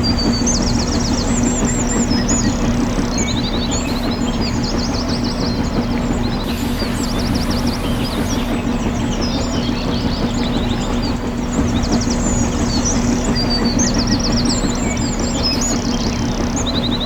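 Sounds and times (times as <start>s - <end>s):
small electric motor humming: 3.5s - 4.5s, 6.4s - 8.7s
birds chirping: 3.6s - 4.5s, 6.3s - 8.7s.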